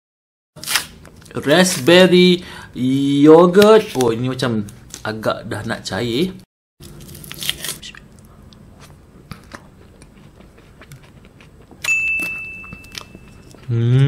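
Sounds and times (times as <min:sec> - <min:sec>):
person eating ice cream: 0:06.8 - 0:13.9
chewing with wet clicks: 0:07.9 - 0:13.7
high ringing tone: 0:11.8 - 0:13.6.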